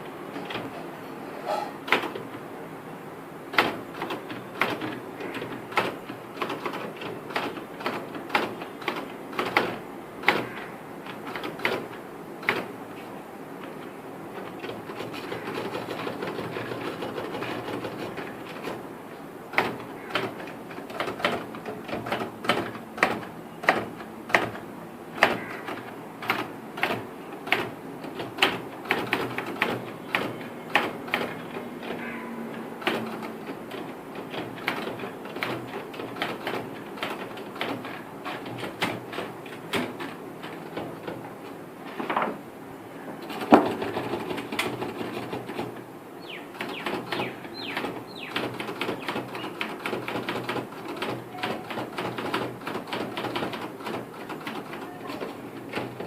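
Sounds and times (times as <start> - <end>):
typewriter keys clacking: 14.4 - 18.8, 19.5 - 24.6, 25.2 - 32.0, 32.8 - 41.3, 46.5 - 56.0.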